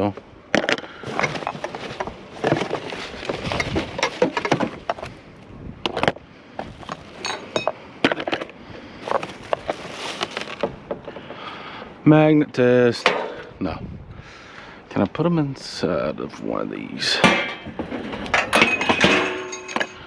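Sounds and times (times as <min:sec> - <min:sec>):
junk knocking and clinking: 0:00.5 - 0:05.1, 0:06.8 - 0:08.5, 0:17.2 - 0:20.0.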